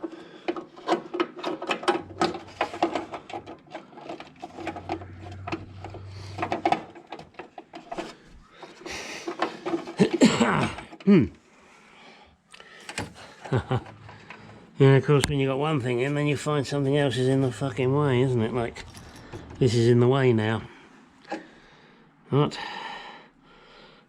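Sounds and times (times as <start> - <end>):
metal fasteners and tools clicking: 0.0 - 11.1, 18.5 - 19.6
low hum: 1.9 - 7.1, 13.6 - 15.4, 16.6 - 21.1.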